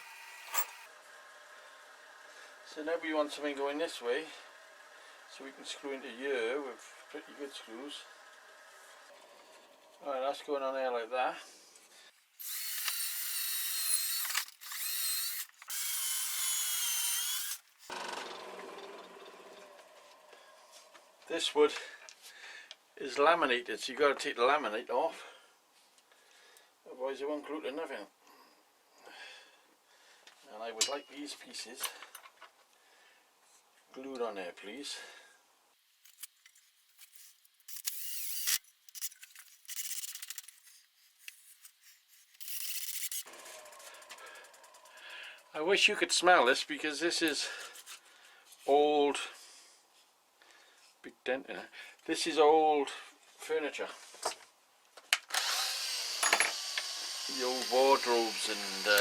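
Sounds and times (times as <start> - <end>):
power drill driving screws: 0.0 - 0.9, 12.4 - 18.6, 37.0 - 40.6, 42.4 - 43.8, 55.3 - 59.0.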